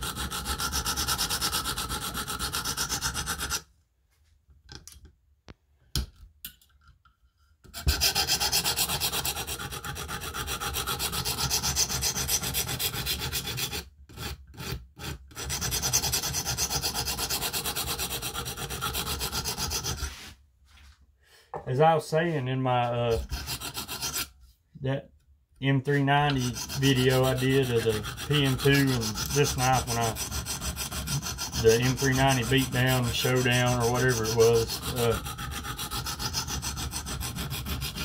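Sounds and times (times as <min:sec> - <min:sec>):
sharpening stone rasping on knife blade: 0:07.8 - 0:20.3, 0:23.1 - 0:24.3, 0:26.3 - 0:38.0.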